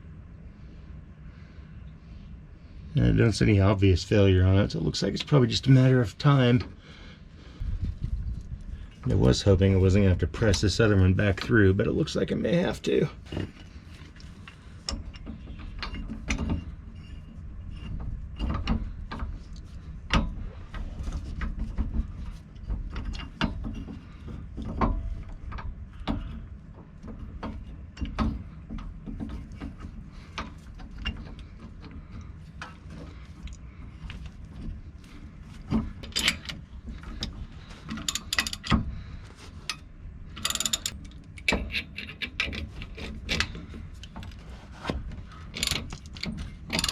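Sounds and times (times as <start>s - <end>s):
ratchet clicking: 38.0s - 38.8s, 40.4s - 43.5s, 45.6s - 46.9s
sharp metal clicks: 40.4s - 43.5s.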